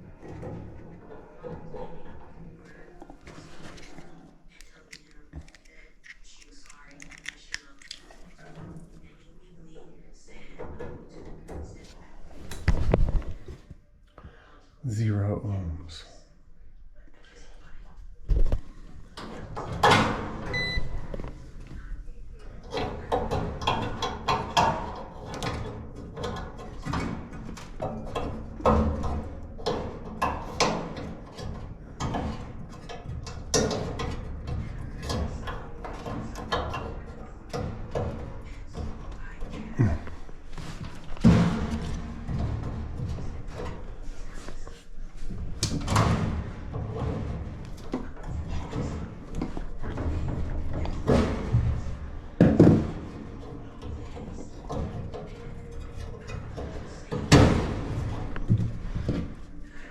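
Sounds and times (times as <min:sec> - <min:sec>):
handling knocks and clunks: 0:18.3 - 0:59.9.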